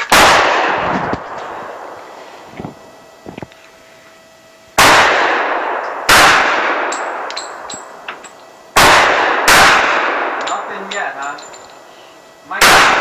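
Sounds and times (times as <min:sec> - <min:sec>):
pistol shots echoing: 0:00.1 - 0:00.8, 0:04.8 - 0:07.7, 0:08.8 - 0:10.9, 0:12.6 - 0:13.0.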